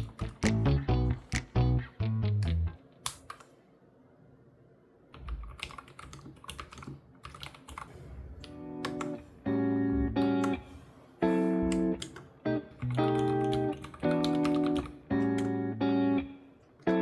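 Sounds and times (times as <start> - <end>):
mechanical keyboard key clacks: 12.8 - 15.5.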